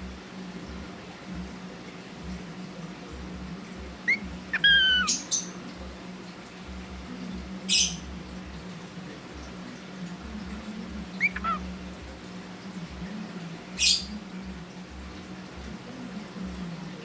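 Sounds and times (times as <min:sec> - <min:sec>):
cockatiel chirping and squawking: 0:04.0 - 0:05.6, 0:11.2 - 0:11.7.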